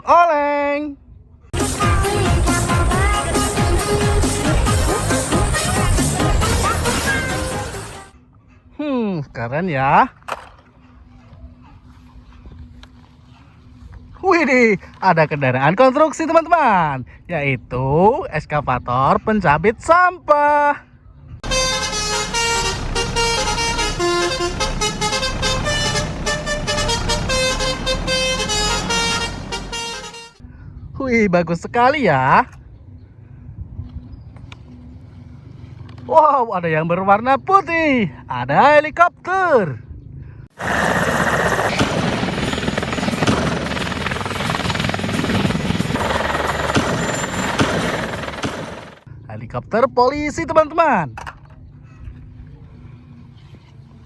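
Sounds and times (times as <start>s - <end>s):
multi-tone vehicle horn tune: 21.4s - 30.4s
low engine rumble: 21.4s - 30.8s.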